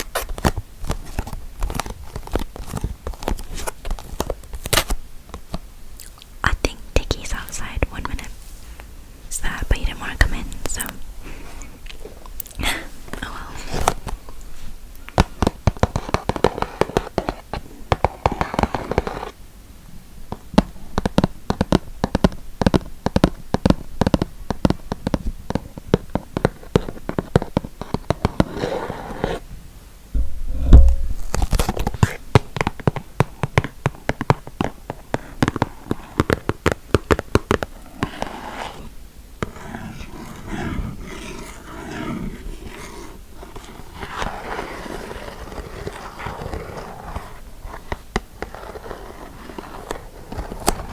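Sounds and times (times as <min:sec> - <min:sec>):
crisp tapping on objects: 0:11.9 - 0:19.3, 0:20.3 - 0:28.5
heavy low thump: 0:30.1 - 0:32.0
rustling: 0:30.1 - 0:33.1
soft scratching: 0:30.2 - 0:32.2, 0:37.8 - 0:50.9.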